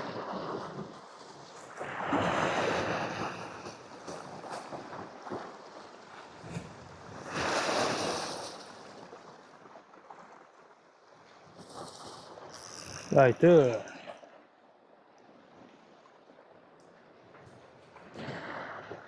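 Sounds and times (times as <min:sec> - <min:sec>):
sea waves washing against rocks: 0:00.0 - 0:10.6, 0:11.5 - 0:14.1.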